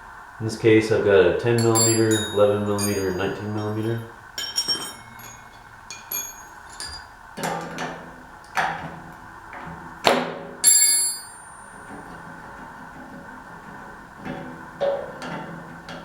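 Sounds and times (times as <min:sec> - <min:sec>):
metal hand tools clinking: 0:01.6 - 0:07.2, 0:10.6 - 0:12.1.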